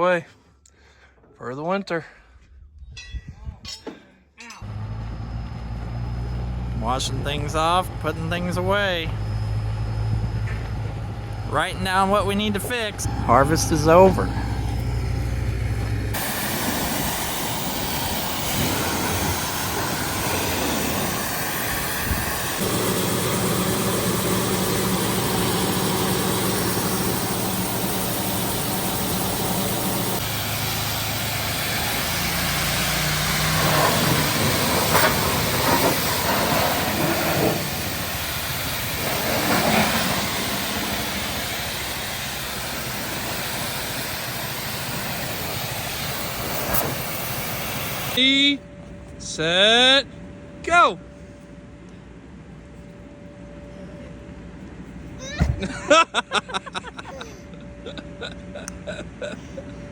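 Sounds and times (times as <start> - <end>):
farm machinery engine running: 4.6 - 48.2.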